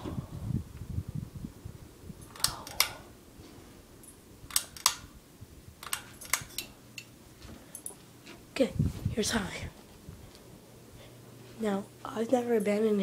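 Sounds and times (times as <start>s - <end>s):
ceiling fan hum: 0.0s - 13.0s
pull-chain switch clicks: 2.2s - 3.0s, 4.0s - 5.1s, 5.8s - 7.1s.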